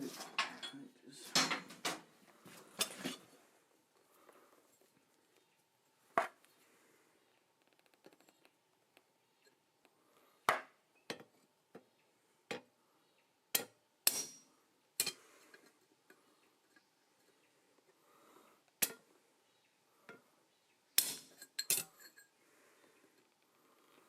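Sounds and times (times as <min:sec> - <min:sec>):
metal-on-metal knocks and clanks: 0:00.2 - 0:02.1.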